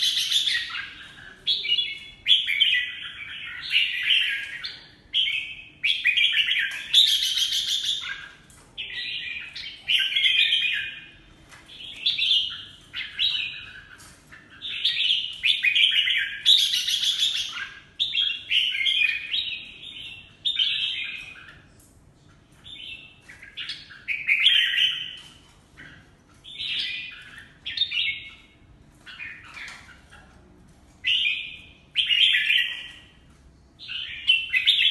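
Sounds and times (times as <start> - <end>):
bird singing warbled phrases: 0.0 - 30.3, 31.0 - 33.2, 33.8 - 34.9.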